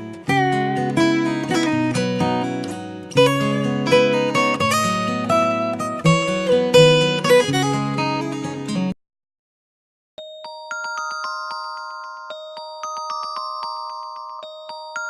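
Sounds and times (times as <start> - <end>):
plucked guitar ringtone melody: 0.0 - 8.9.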